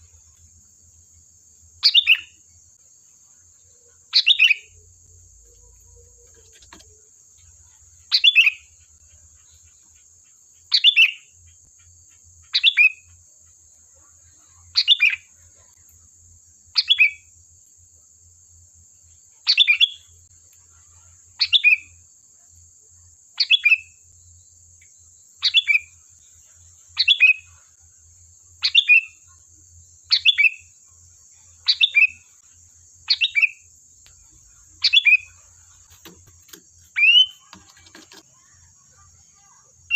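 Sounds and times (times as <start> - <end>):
faint high-pitched hiss: 0.0 - 39.9
bird calling: 8.1 - 8.8, 34.8 - 38.6.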